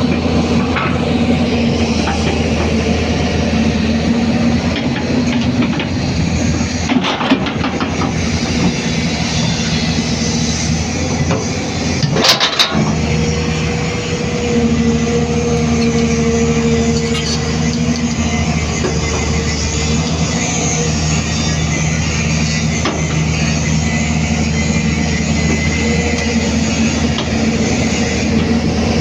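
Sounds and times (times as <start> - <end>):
excavator diesel engine running: 0.0 - 29.0.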